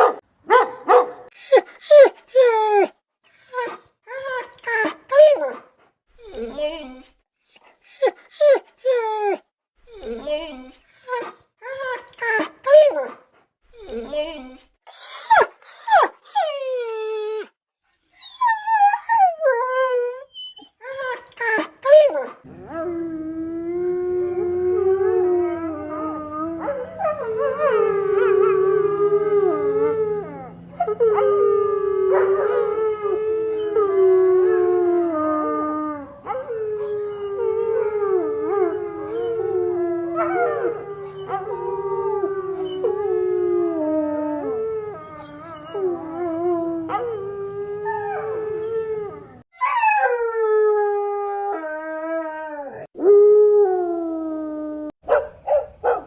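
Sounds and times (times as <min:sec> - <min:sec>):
dog howling: 0:22.5 - 0:54.9.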